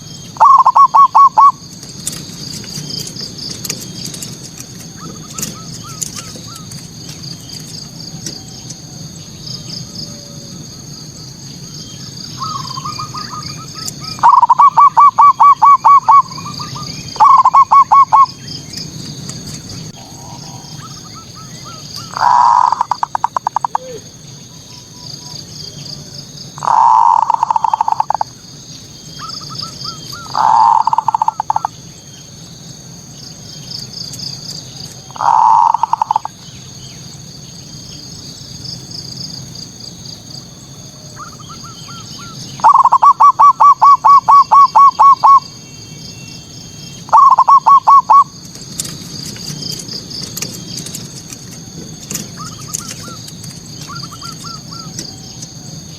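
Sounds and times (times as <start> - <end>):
dove cooing in pulsed notes: 0.0 - 1.7, 4.8 - 6.8, 12.3 - 18.6, 19.6 - 28.5, 29.1 - 31.8, 35.1 - 36.5, 41.0 - 45.7, 47.0 - 48.4, 52.1 - 55.9
faint high chirping: 0.0 - 1.7, 4.9 - 32.4, 41.0 - 48.4, 52.1 - 55.9.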